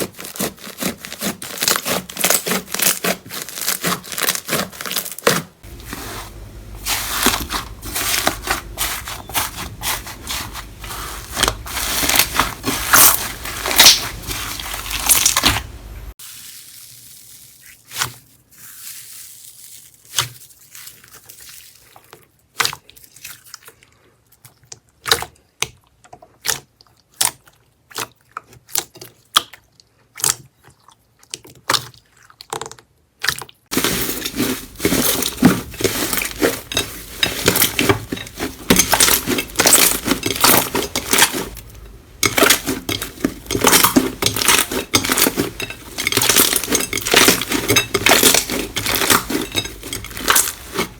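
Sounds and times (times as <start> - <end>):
slime crackling and crunching: 0.0 - 23.6, 33.7 - 50.9.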